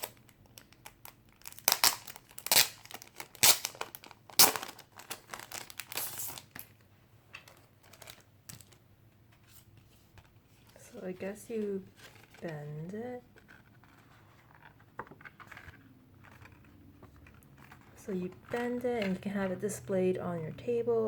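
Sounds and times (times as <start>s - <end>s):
packaging crinkling and crackling: 0.0s - 8.8s, 10.5s - 19.6s.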